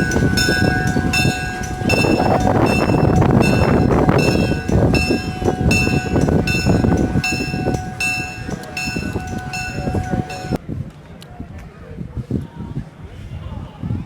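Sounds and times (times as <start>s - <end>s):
bell ringing: 0.0s - 10.6s
train rumbling: 0.0s - 10.6s.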